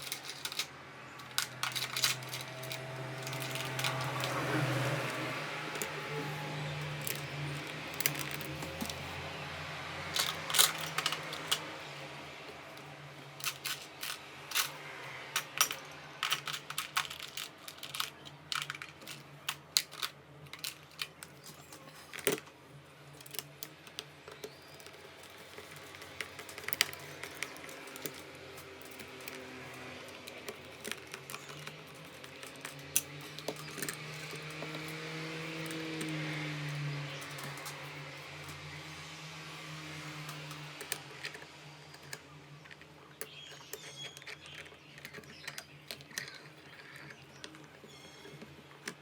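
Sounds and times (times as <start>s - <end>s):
coffee grinder parts clicking: 0.0s - 6.0s, 6.8s - 9.1s, 10.1s - 11.8s, 12.8s - 14.8s, 15.4s - 22.4s, 23.2s - 38.6s.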